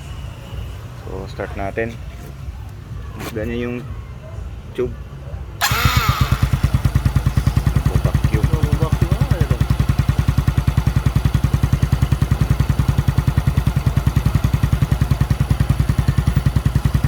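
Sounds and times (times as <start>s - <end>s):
motorcycle engine idling: 5.6s - 17.0s.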